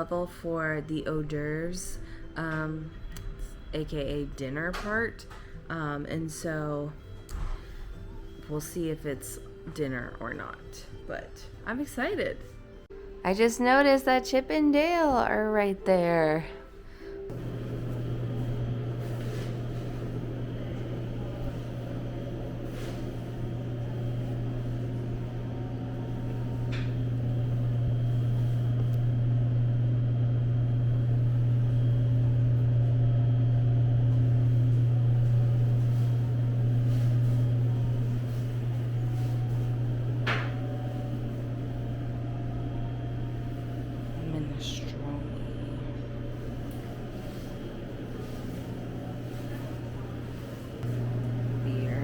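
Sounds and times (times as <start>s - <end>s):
low machine hum: 16.3s - 52.0s.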